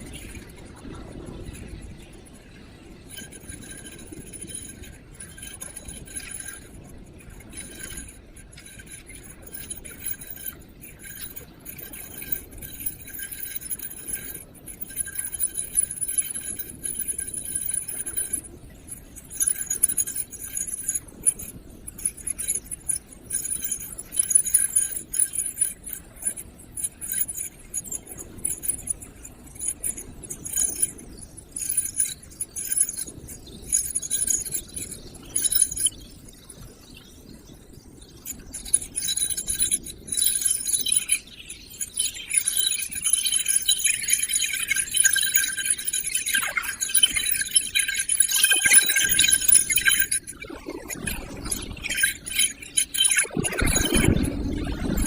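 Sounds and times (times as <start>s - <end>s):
metallic jingling rattle: 3.1s - 36.1s, 38.2s - 55.0s.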